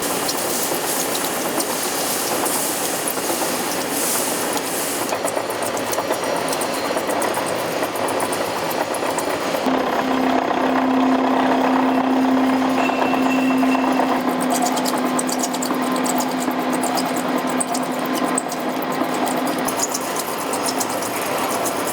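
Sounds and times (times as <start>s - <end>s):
hissing: 0.0s - 5.8s
factory machinery running: 0.0s - 21.9s.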